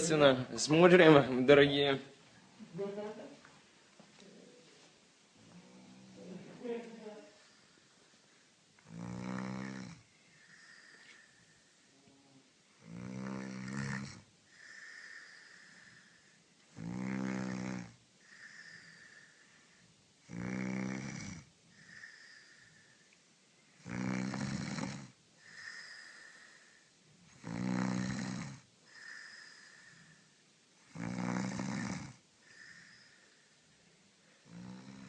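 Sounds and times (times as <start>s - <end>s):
woman snoring loudly: 8.8s - 11.0s, 12.8s - 16.1s, 16.7s - 19.4s, 20.3s - 22.9s, 23.8s - 26.6s, 27.3s - 30.0s, 30.8s - 33.2s, 34.4s - 35.0s
high-pitched breath: 10.2s - 11.8s, 14.5s - 16.4s, 18.2s - 19.9s, 21.8s - 23.1s, 25.4s - 27.0s, 28.9s - 30.4s, 32.4s - 33.7s.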